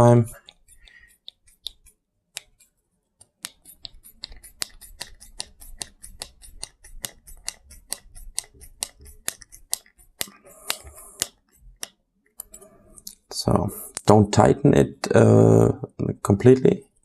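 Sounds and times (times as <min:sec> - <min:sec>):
hand tool clicking: 0:03.3 - 0:13.2.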